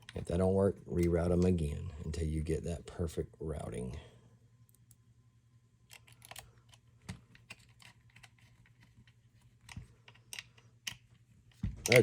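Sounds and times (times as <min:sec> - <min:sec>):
faint low hum: 0:00.0 - 0:12.0
small clicks of rifle parts: 0:05.9 - 0:11.2.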